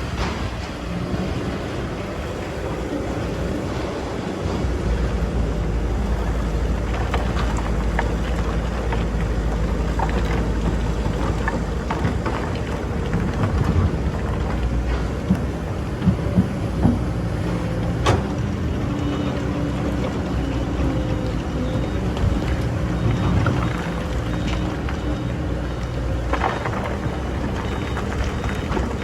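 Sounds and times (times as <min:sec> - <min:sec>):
excavator engine running: 0:00.0 - 0:29.0.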